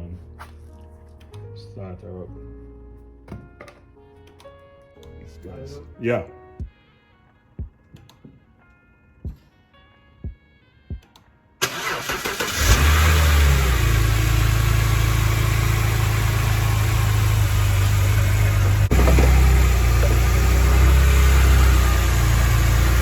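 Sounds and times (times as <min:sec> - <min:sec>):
car engine idling: 0:11.6 - 0:23.0
car starter cranking: 0:11.6 - 0:23.0.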